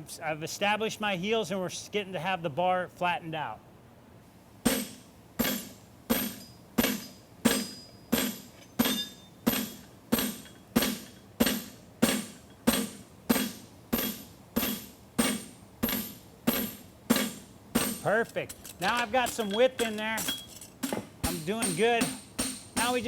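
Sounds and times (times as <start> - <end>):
hammer ringing on anvil: 4.7 - 23.0.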